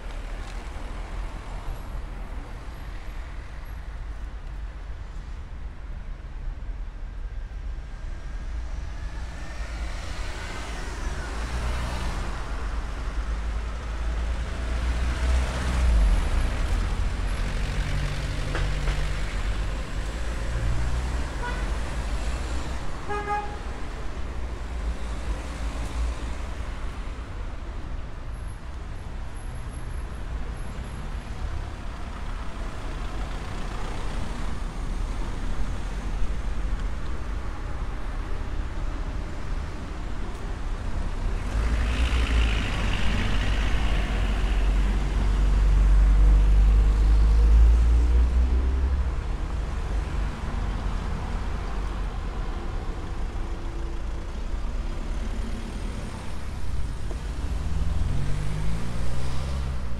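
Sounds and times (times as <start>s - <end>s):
low traffic rumble: 0.0s - 59.9s
cars passing: 28.9s - 59.9s.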